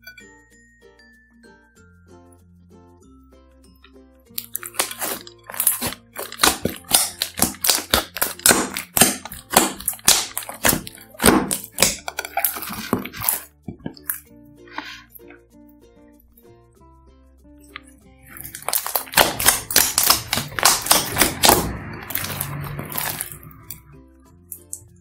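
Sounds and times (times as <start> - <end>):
quiet background music: 0.0 - 25.0
slime squishing with wet pops: 4.4 - 14.2, 18.3 - 23.8.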